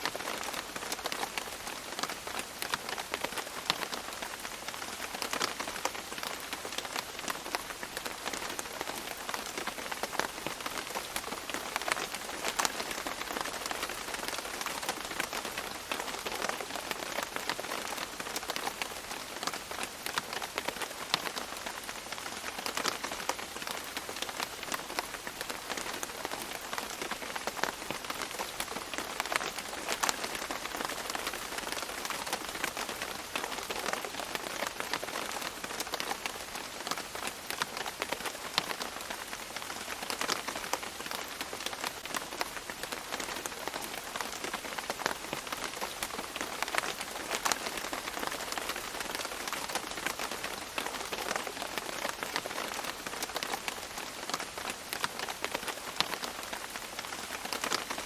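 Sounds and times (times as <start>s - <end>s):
rain falling on leaves: 0.0s - 58.0s.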